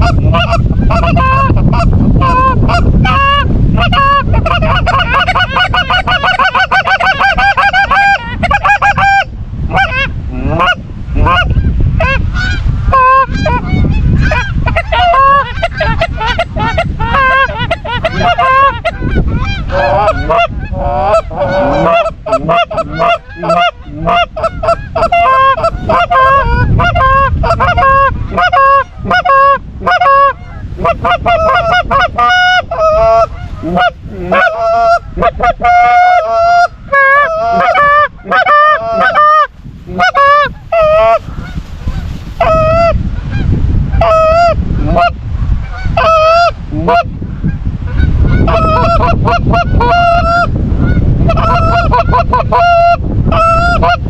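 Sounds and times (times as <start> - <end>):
geese honking: 0.0 - 47.1, 47.9 - 54.0.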